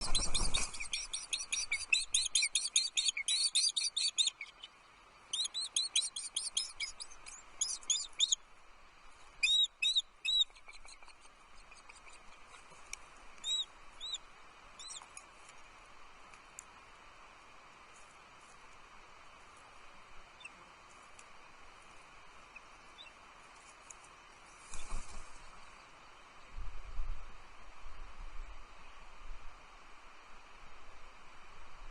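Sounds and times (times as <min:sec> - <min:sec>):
baby birds chirping: 0:00.0 - 0:04.6, 0:05.3 - 0:08.4.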